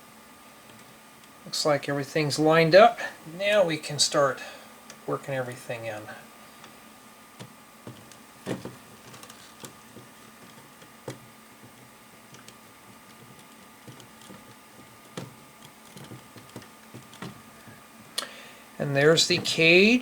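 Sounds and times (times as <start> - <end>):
plastic pieces clicking and snapping: 7.4 - 17.7.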